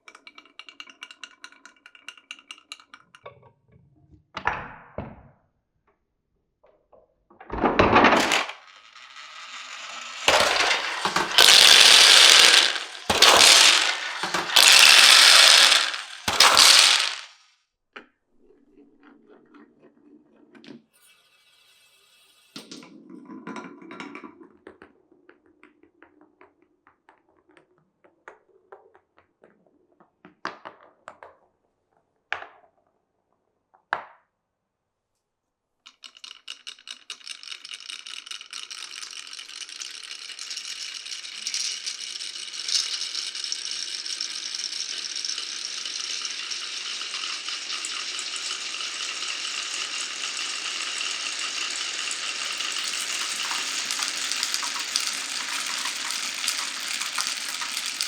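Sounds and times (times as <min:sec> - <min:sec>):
marbles rolling on wooden run: 0:00.1 - 0:03.2, 0:07.4 - 0:17.4, 0:35.9 - 0:58.0
marbles clacking: 0:07.6 - 0:17.4, 0:35.9 - 0:58.0
rattle of many marbles: 0:07.7 - 0:17.4, 0:35.9 - 0:58.0.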